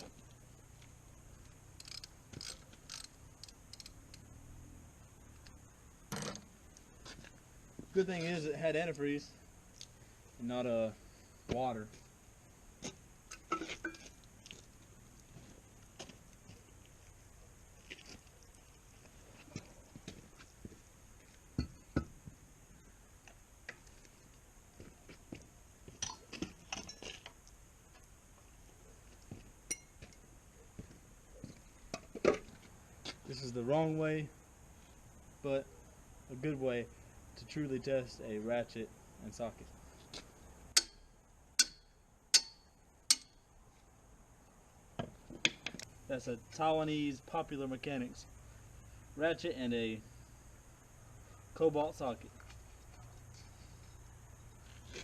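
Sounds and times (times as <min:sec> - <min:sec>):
socket ratchet clicking: 0:01.8 - 0:04.2
tools and metal parts clinking: 0:13.4 - 0:14.1, 0:26.0 - 0:27.3.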